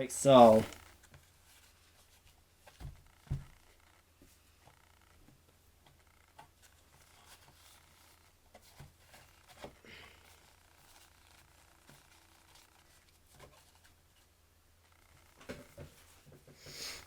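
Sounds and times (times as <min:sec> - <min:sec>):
hands handling paper and cardboard: 0:05.8 - 0:14.3.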